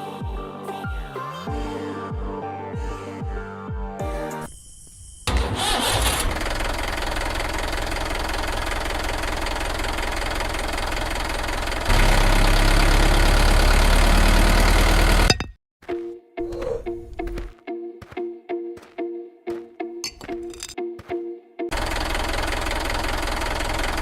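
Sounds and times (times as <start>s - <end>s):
engine running with knocking beat: 6.3s - 15.3s, 21.7s - 24.0s.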